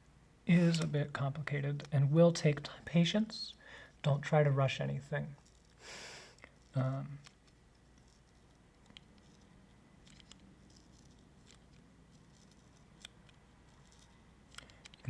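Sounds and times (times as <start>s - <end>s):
ribbon cable peeling ticks: 6.4s - 15.0s.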